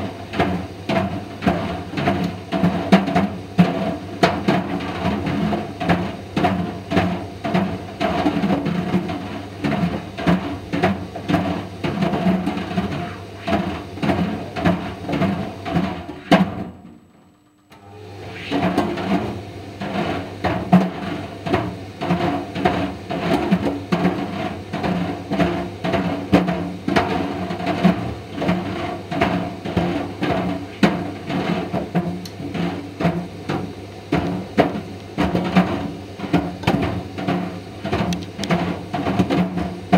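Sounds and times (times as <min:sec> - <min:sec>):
dryer balls knocking in drum: 0:00.0 - 0:17.0, 0:18.6 - 0:39.9.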